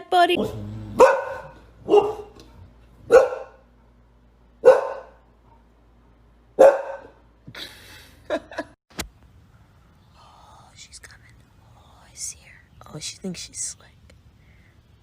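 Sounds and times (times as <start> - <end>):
dog barking: 0.4 - 3.6, 4.6 - 5.2, 6.6 - 7.2.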